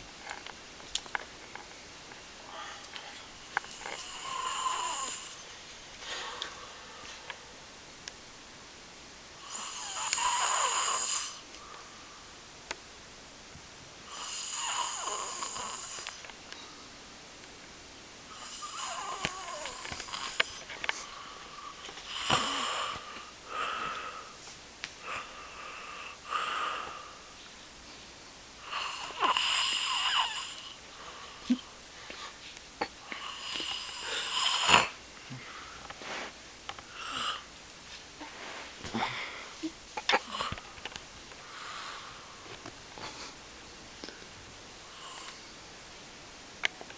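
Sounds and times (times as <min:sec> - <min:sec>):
person snoring: 0:03.7 - 0:05.4, 0:09.4 - 0:11.4, 0:14.1 - 0:16.2, 0:18.3 - 0:24.4, 0:28.6 - 0:31.7, 0:33.0 - 0:36.3, 0:36.9 - 0:37.5.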